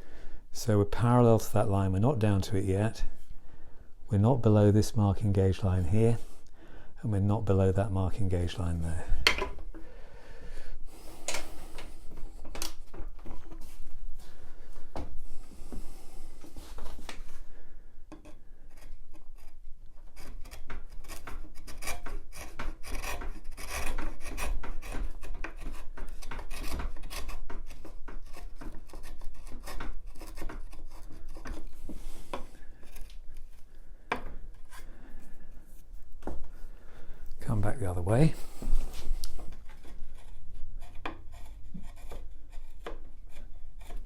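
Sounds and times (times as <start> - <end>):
chisel paring wood: 20.1 - 33.4, 39.6 - 44.0.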